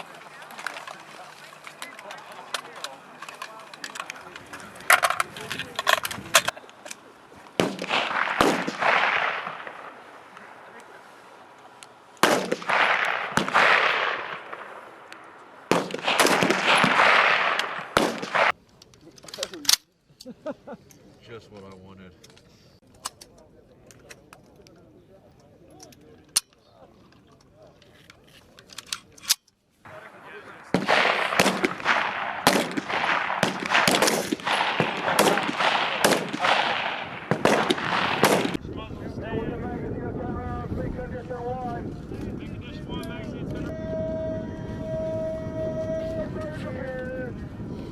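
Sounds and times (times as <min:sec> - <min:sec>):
sharp rifle shots: 0:07.6 - 0:10.0, 0:12.2 - 0:18.5, 0:30.6 - 0:38.6
clatter of overlapping shots: 0:27.1 - 0:38.7.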